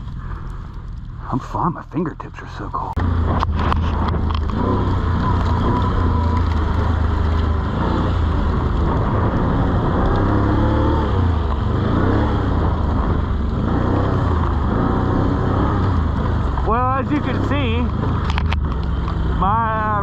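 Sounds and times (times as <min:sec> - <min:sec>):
dirt bike engine revving: 0:03.0 - 0:18.3
rear wheel spinning in snow: 0:03.0 - 0:19.2.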